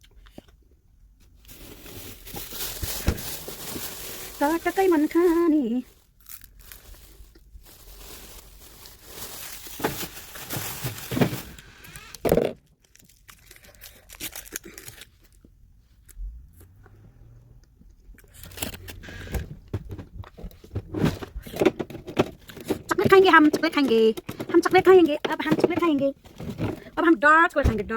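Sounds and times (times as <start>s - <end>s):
packaging crinkling and tearing: 1.3s - 12.2s, 12.8s - 15.5s, 18.2s - 19.0s.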